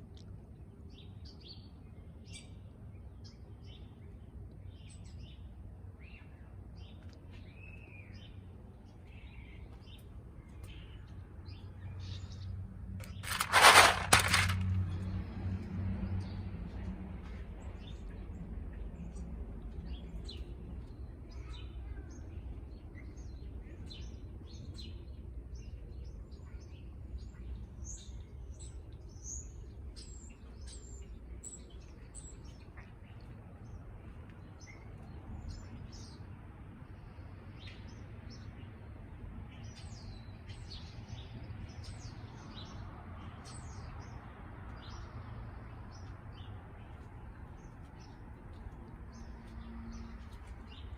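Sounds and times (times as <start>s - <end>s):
small birds chirping: 17.6s - 36.3s, 39.5s - 50.9s.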